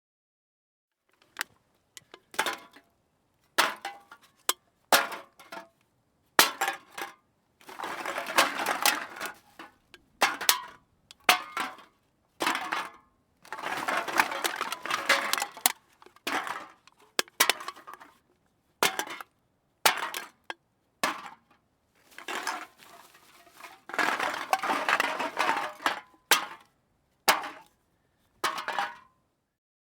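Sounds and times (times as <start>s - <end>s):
metal cans clinking: 6.4s - 18.2s, 18.8s - 19.2s, 22.1s - 26.7s, 27.3s - 27.7s, 28.4s - 29.0s
cans rattling together: 13.5s - 18.2s, 22.1s - 26.6s.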